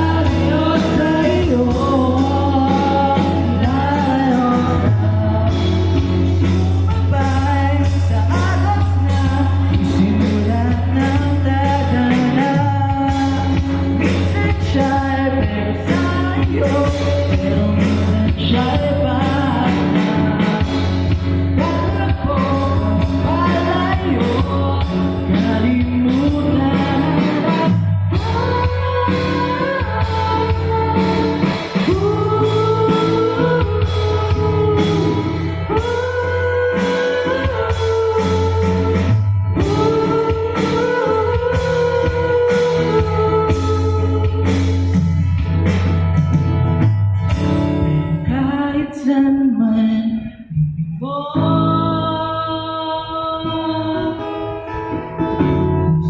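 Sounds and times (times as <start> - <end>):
person singing through pa: 0.0 - 46.4, 47.3 - 56.0
live band accompaniment: 0.0 - 56.0.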